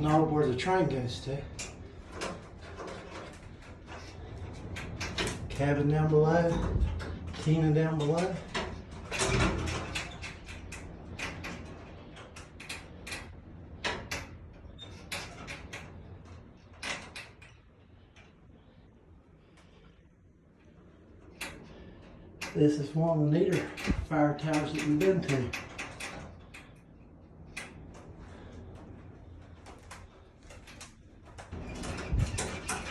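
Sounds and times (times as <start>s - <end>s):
wind rumbling on microphone: 0.0s - 18.9s, 22.6s - 32.9s
sharp knocks and rattles: 0.0s - 32.9s.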